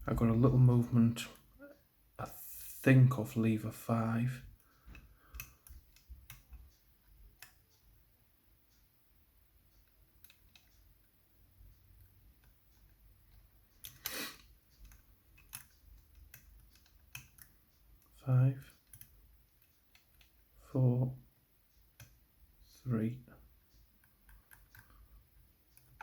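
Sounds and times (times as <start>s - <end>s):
lock-picking tools clicking: 14.8s - 18.1s.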